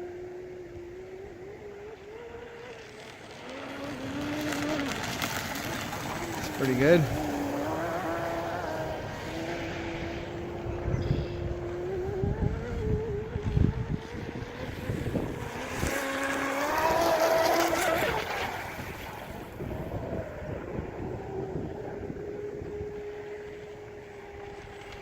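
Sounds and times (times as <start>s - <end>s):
low rumbling noise: 0.0s - 25.0s
electric motor whining: 0.1s - 25.0s.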